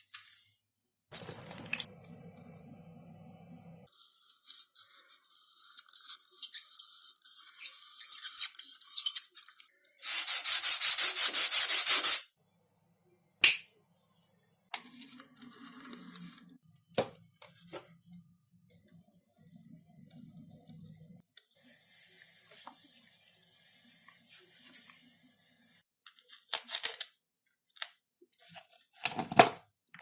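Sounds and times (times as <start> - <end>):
sandpaper rubbing on foam: 10.0 - 12.2.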